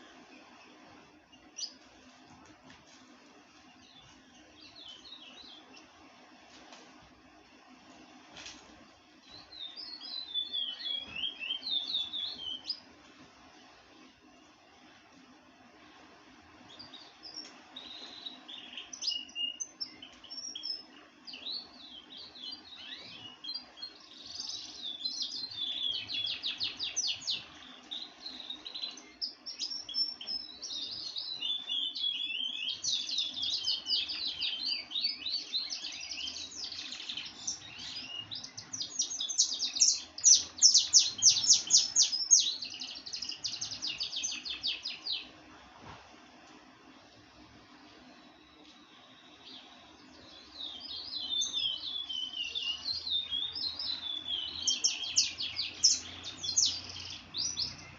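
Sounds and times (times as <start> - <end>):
songbird singing: 0.0 - 45.5, 46.3 - 57.9
faint steady low hum: 0.0 - 57.9.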